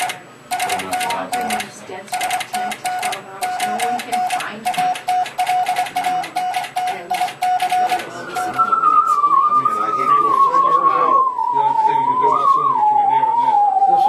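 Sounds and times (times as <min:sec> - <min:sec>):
buzzing morse code tone: 0:00.0 - 0:08.7
wavering whistle sliding down: 0:08.4 - 0:14.0.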